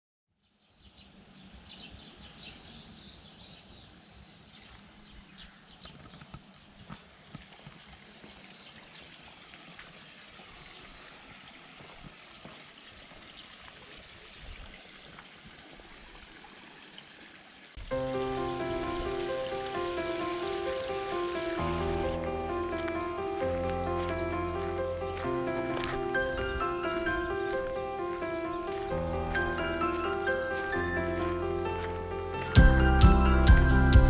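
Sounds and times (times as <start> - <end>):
background music: 17.9 - 34.0.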